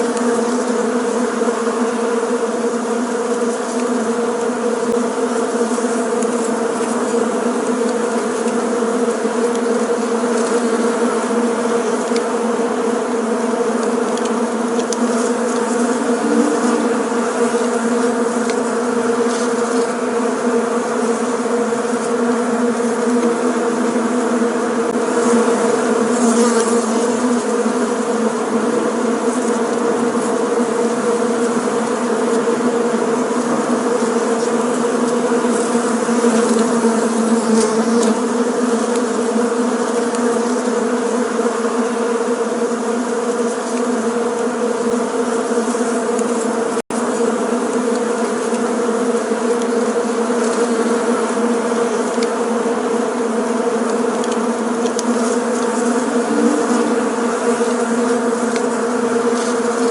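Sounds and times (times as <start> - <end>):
bees buzzing: 0.0 - 59.9.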